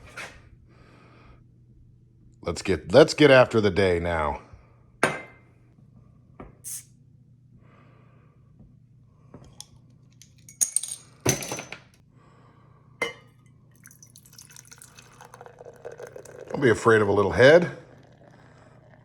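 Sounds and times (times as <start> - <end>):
bottle opening hiss: 6.6 - 6.9
beer pouring: 13.4 - 19.0.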